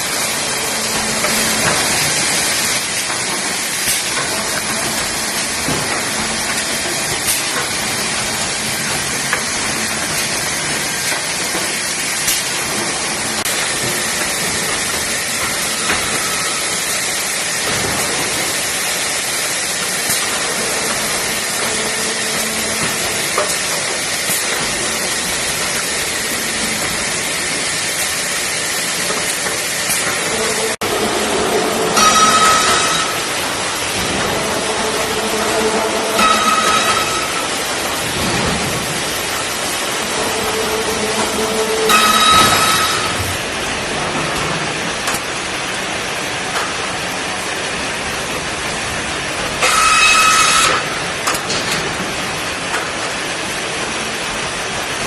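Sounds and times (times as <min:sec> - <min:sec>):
factory machinery hissing: 0:00.0 - 0:55.0
high-pitched whine: 0:13.3 - 0:17.5, 0:20.2 - 0:27.9, 0:29.0 - 0:44.2, 0:49.6 - 0:51.0.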